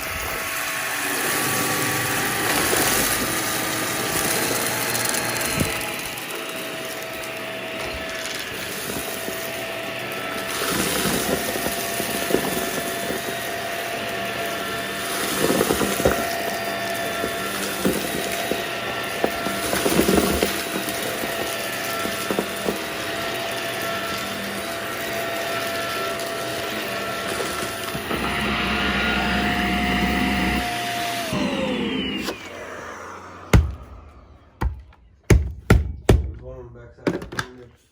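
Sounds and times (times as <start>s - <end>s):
vacuum cleaner running: 0.0s - 35.5s.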